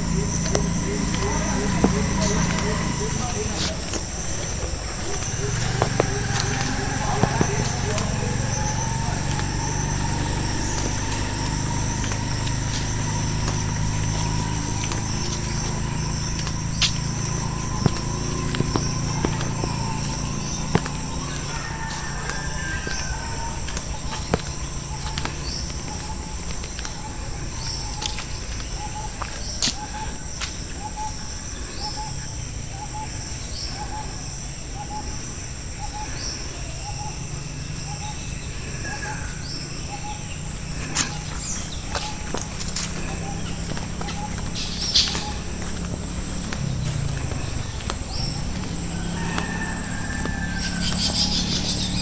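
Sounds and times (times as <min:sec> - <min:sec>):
low rumble: 0:00.0 - 0:29.0
birds calling: 0:00.0 - 0:52.0
insects droning: 0:00.0 - 0:52.0.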